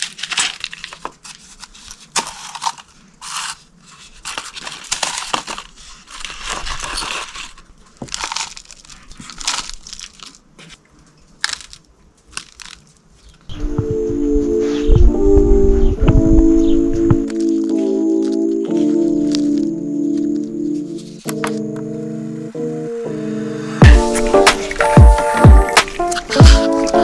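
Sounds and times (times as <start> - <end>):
dry material rustling and crunching: 0.0 - 13.5
music: 13.5 - 27.0.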